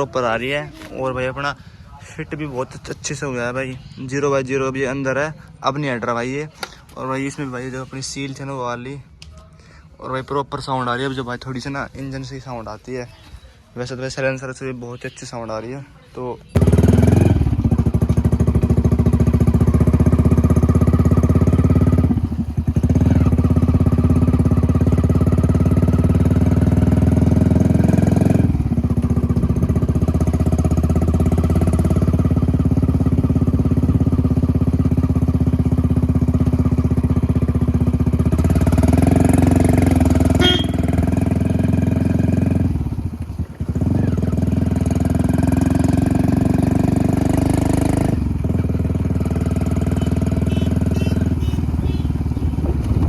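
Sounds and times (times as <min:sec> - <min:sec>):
motorcycle engine exhaust note: 0:16.6 - 0:53.0.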